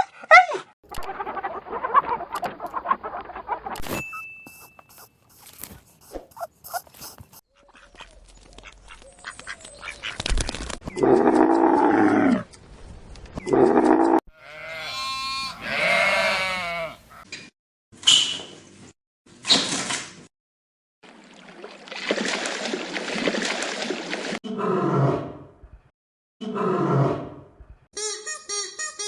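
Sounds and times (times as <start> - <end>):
animal calls: 1.1 - 9.1.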